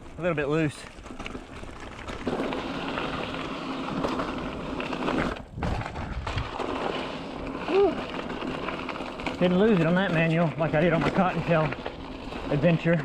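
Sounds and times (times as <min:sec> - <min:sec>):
bike tyres crunching over gravel: 0:00.0 - 0:13.0
wind on the microphone: 0:05.4 - 0:06.6.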